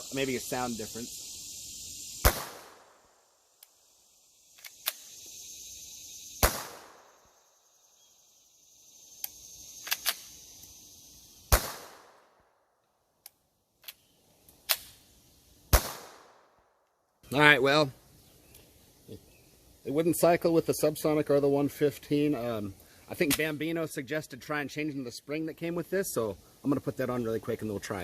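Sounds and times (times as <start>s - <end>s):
pistol shots: 2.2s - 3.0s, 6.4s - 7.1s, 11.5s - 12.2s, 15.7s - 16.4s.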